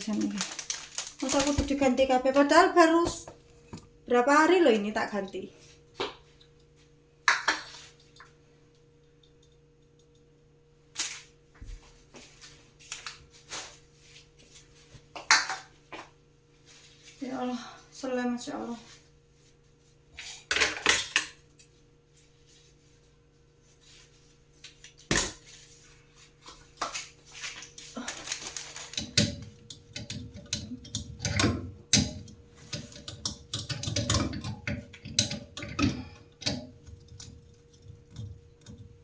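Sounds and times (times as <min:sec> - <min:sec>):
faint steady hum: 0:00.0 - 0:39.0
clatter of parts being handled: 0:26.8 - 0:29.4.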